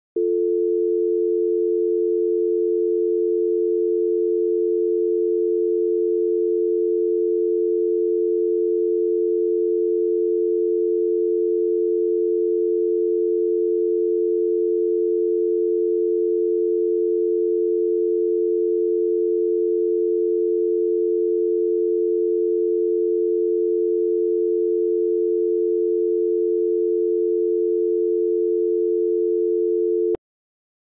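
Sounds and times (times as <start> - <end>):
telephone dial tone: 0.2 - 30.2.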